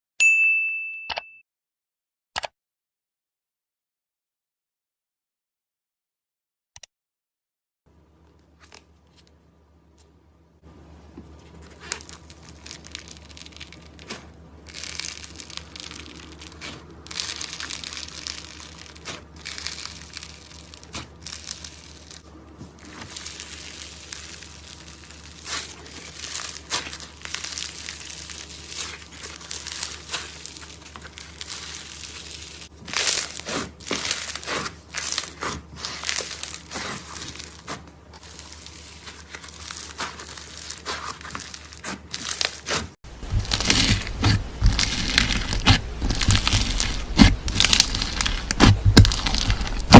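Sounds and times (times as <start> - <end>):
slime crackling: 11.4 - 49.9.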